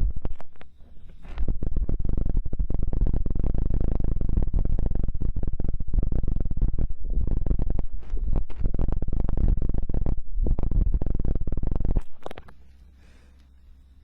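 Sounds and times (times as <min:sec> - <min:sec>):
low rumble: 0:00.0 - 0:13.0
ear-cleaning tool scraping: 0:00.1 - 0:03.2.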